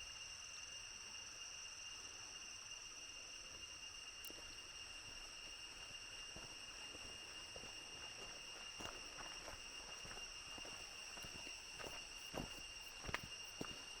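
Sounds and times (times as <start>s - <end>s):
high-pitched insect chorus: 0.0s - 14.0s
footsteps crunching on trail: 4.3s - 14.0s.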